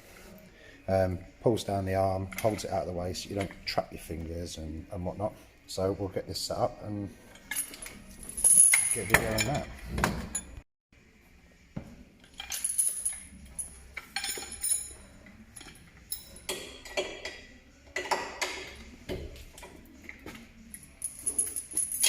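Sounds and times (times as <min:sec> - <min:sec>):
metal tools clinking and clanking: 0:07.3 - 0:10.6, 0:12.2 - 0:18.8, 0:20.7 - 0:22.0.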